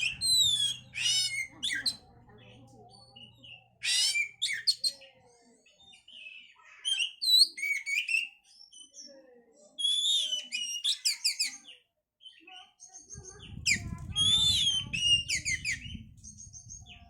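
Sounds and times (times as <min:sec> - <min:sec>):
bird singing whistles and trills: 0:00.0 - 0:02.0, 0:03.0 - 0:05.2, 0:06.0 - 0:09.1, 0:09.8 - 0:12.4, 0:13.2 - 0:17.0.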